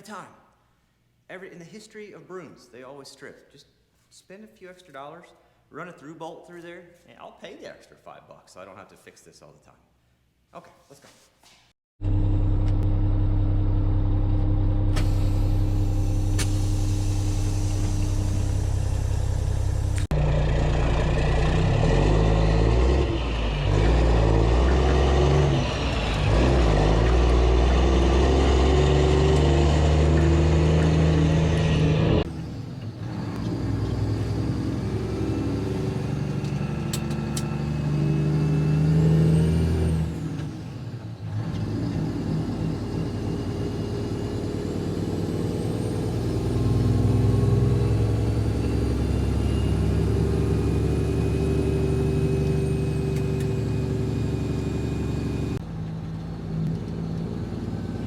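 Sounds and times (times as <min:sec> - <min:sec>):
truck diesel engine running: 0:12.0 - 0:38.0.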